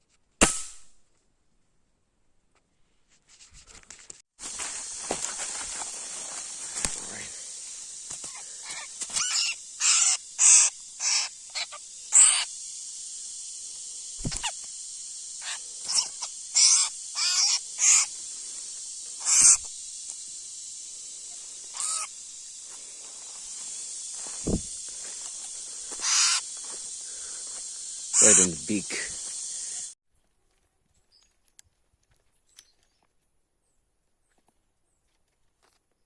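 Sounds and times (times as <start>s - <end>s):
bird harsh calls: 6.8s - 12.6s, 14.2s - 14.6s, 15.4s - 18.2s, 19.2s - 19.7s, 21.3s - 22.2s, 25.7s - 27.4s, 28.0s - 29.9s.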